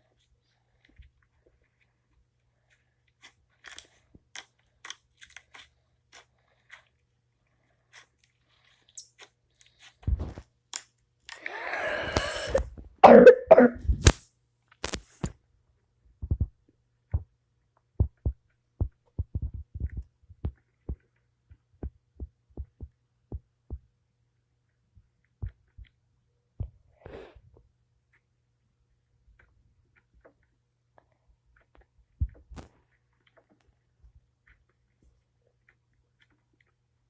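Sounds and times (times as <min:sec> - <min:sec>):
person coughing: 0:13.0 - 0:13.8
soft low thumps: 0:16.2 - 0:17.4, 0:18.0 - 0:23.9.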